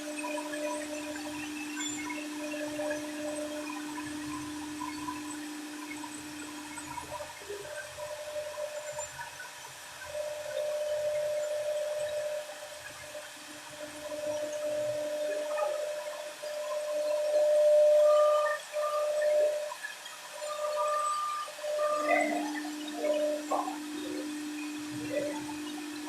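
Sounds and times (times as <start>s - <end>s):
router spindle whine: 0.0s - 26.0s
machining noise: 13.3s - 26.0s.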